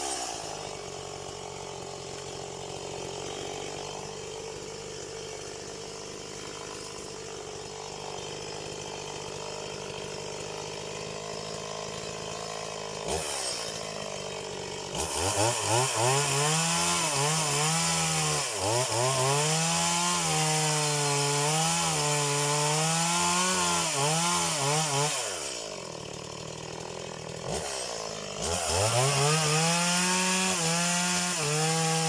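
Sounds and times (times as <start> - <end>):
chainsaw engine revving: 0.0 - 32.0.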